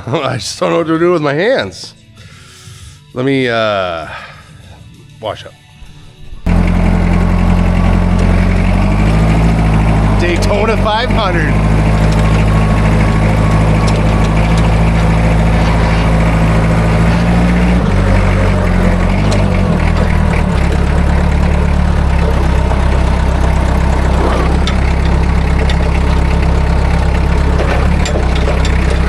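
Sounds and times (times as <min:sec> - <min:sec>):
engine running loudly: 0:06.4 - 0:29.0.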